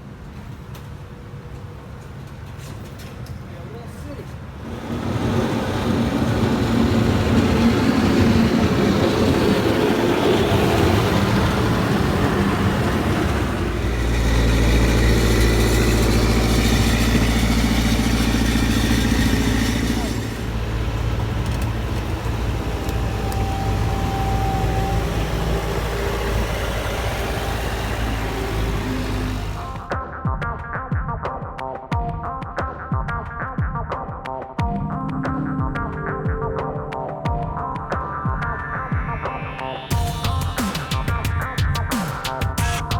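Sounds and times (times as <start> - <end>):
engine running: 4.6 - 29.9, 34.9 - 42.9
indistinct voices: 4.7 - 29.9.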